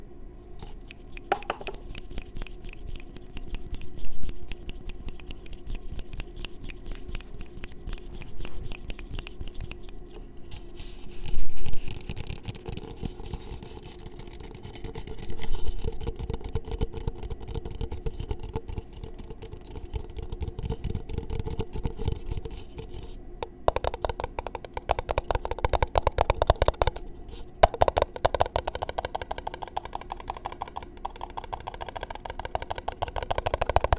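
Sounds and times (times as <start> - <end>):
fingertips tapping on microphone: 0.6 - 10.2, 11.8 - 27.0, 27.6 - 33.9
hands rubbing on microphone: 0.6 - 16.2, 17.7 - 23.2, 28.8 - 33.9.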